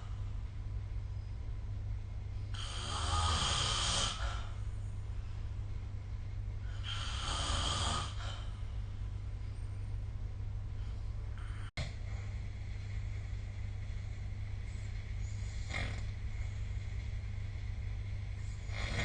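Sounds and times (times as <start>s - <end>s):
steady low hum: 0.0s - 19.0s
person snoring: 2.6s - 4.5s, 6.8s - 8.5s.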